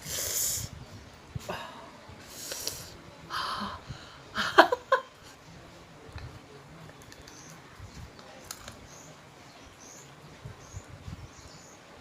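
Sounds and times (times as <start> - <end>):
woman breathing sharply and hissing: 0.0 - 0.8.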